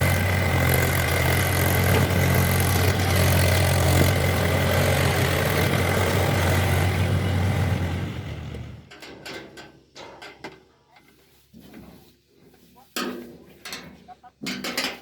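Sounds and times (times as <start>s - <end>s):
diesel engine idling: 0.0s - 8.9s.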